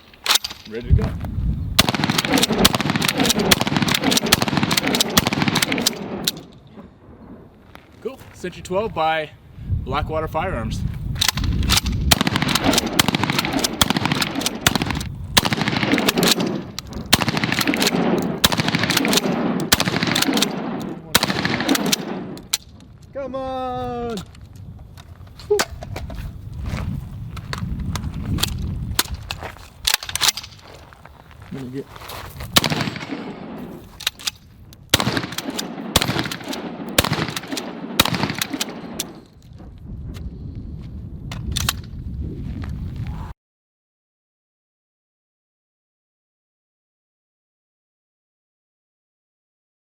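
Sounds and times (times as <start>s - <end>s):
rapid gunfire: 1.8s - 6.2s, 12.1s - 16.6s, 17.2s - 22.4s, 35.0s - 39.1s
shotgun shots echoing: 1.8s - 6.5s, 11.2s - 22.6s, 32.6s - 34.0s, 34.9s - 39.3s
shotgun pump clicks: 1.8s - 6.6s.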